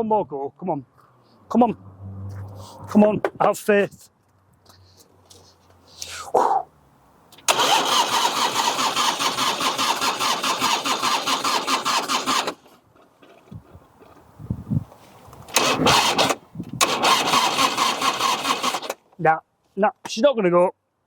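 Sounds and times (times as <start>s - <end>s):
motorcycle electric starter cranking: 7.4s - 12.7s, 15.5s - 19.0s.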